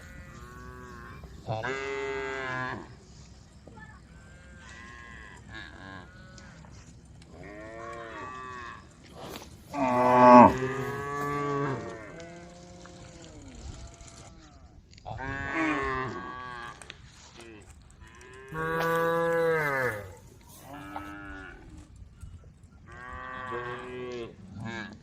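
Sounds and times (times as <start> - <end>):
cattle mooing: 0.0 - 2.9, 9.7 - 13.1, 18.4 - 21.6.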